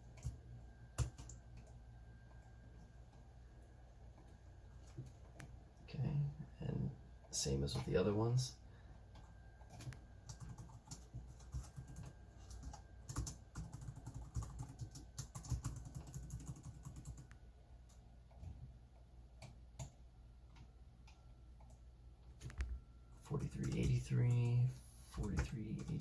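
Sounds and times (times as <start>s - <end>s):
typing on a keyboard: 0.1s - 0.4s, 1.0s - 2.4s, 9.2s - 18.5s, 23.4s - 26.0s.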